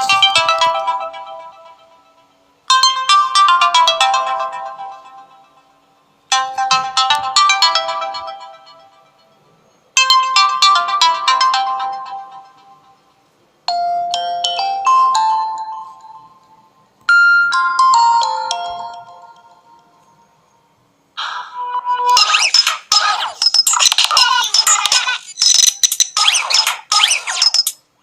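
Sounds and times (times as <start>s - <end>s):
electronic ringtone chimes: 0.0s - 5.6s, 6.3s - 9.3s, 13.7s - 20.2s.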